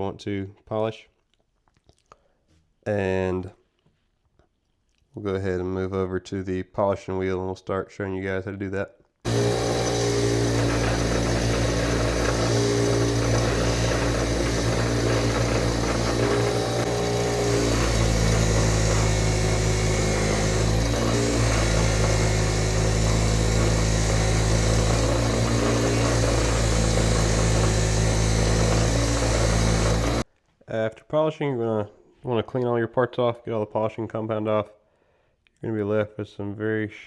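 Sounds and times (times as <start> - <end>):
metal parts rubbing on wheel: 9.3 - 30.2
polishing wheel motor humming: 9.3 - 30.2.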